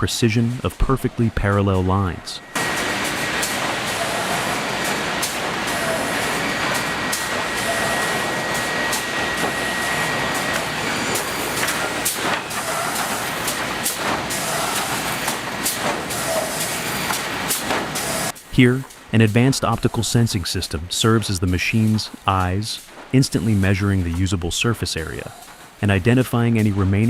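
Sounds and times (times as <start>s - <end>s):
sawmill machinery clatter and rumble: 2.5s - 18.4s.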